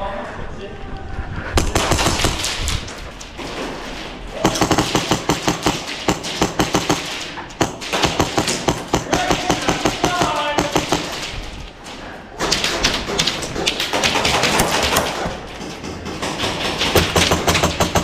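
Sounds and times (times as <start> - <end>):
airsoft gun rapid firing: 1.6 - 2.7, 4.4 - 11.3, 12.4 - 15.3, 16.2 - 18.0.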